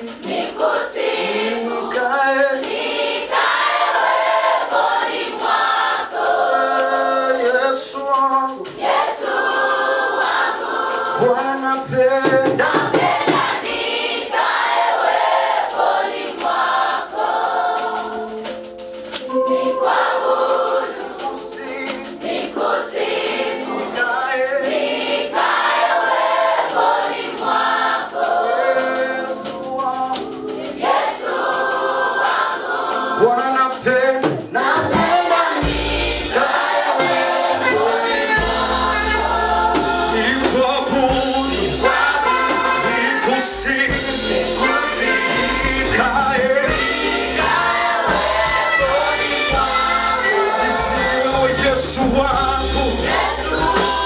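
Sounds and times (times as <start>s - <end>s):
choir singing: 0.0s - 54.0s
deep bass: 38.4s - 42.0s, 43.5s - 54.0s.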